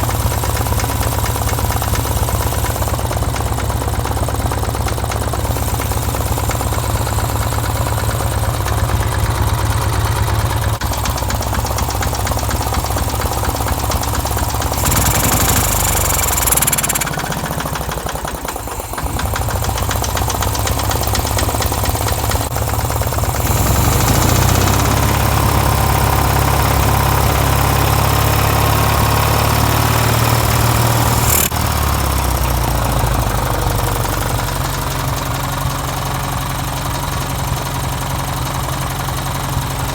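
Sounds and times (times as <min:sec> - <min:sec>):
short hiss: 0:00.0 - 0:09.2
engine welder running: 0:00.0 - 0:39.9.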